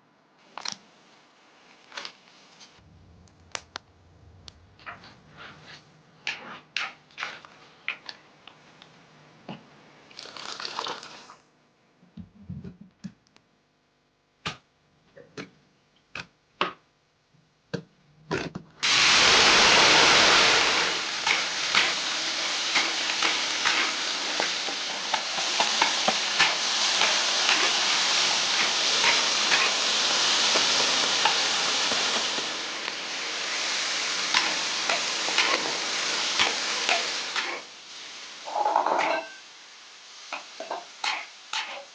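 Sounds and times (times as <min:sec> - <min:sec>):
food sizzling in hot oil: 0:18.8 - 0:41.9.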